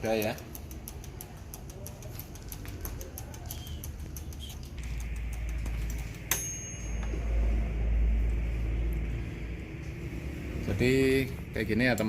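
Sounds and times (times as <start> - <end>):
mechanical timer ticking: 0.0 - 7.5
timer bell ding: 5.8 - 8.2
low rumble: 6.9 - 11.9.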